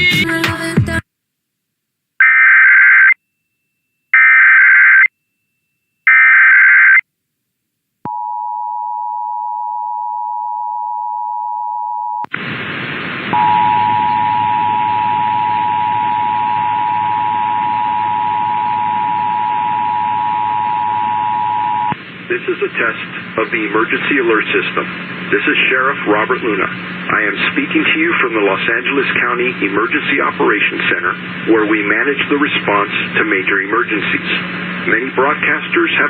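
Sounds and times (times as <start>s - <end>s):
radio hiss: 12.3s - 20.0s, 21.1s - 36.0s
two-tone attention signal: 13.4s - 22.0s.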